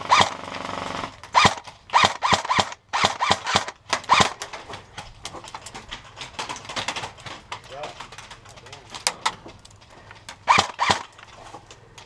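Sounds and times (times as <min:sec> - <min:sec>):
airsoft gunshots: 0:00.0 - 0:04.4, 0:10.4 - 0:11.2.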